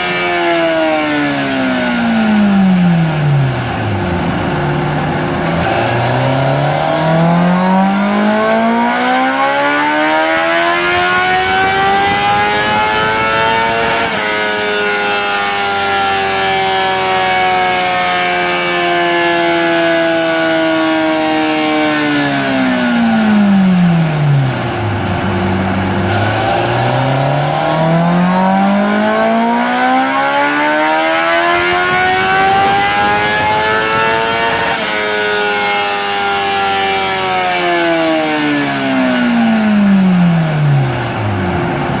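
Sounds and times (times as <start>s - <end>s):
motorcycle engine revving on dyno: 0.0s - 42.0s.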